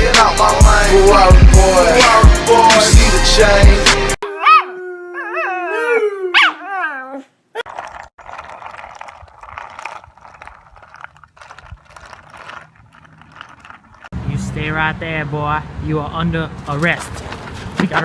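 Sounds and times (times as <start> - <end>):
dog howling: 4.2 - 7.2.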